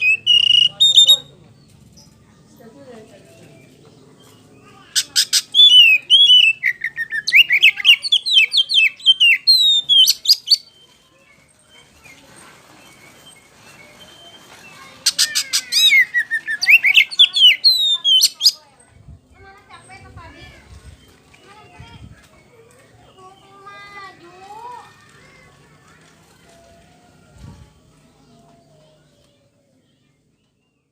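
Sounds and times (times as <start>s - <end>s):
bird whistled song: 0.0s - 1.3s, 5.0s - 11.0s, 13.0s - 18.6s.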